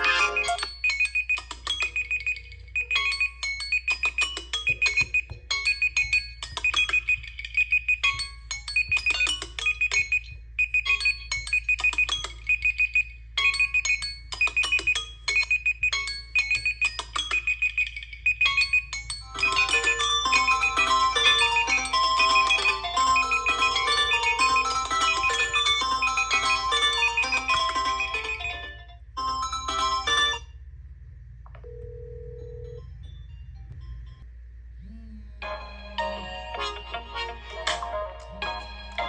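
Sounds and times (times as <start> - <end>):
marimba-like ringtone melody: 0.0 - 28.7
phone ringtone with pulsing beep: 0.0 - 30.5, 31.7 - 34.2
steady low hum: 28.9 - 39.0.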